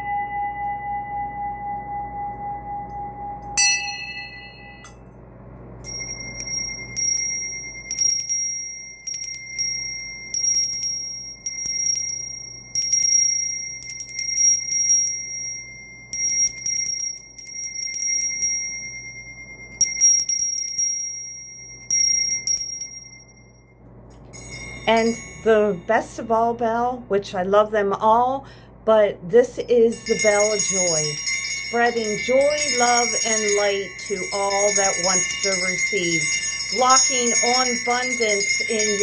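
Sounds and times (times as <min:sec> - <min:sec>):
small bell strike: 0:00.0 - 0:05.2
singing bowl hum: 0:00.0 - 0:27.2, 0:29.6 - 0:39.0
hand bell ringing: 0:05.8 - 0:23.6, 0:24.3 - 0:25.9, 0:29.9 - 0:39.0.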